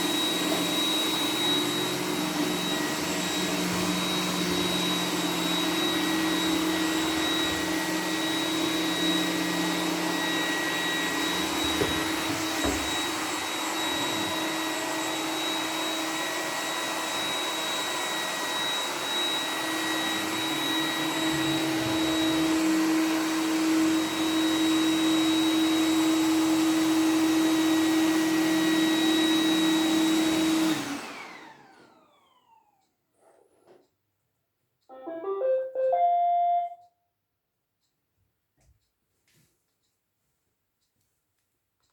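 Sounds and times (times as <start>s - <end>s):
robot vacuum running: 0.0s - 27.0s.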